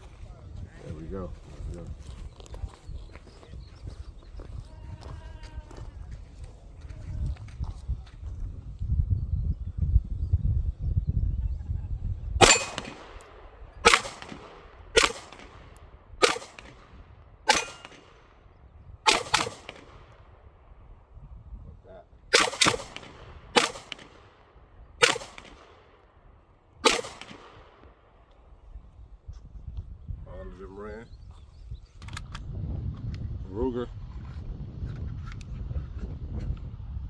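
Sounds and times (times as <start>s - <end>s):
pistol shots with echo: 12.4s - 18.4s, 19.0s - 20.4s, 22.3s - 26.1s, 26.8s - 28.2s.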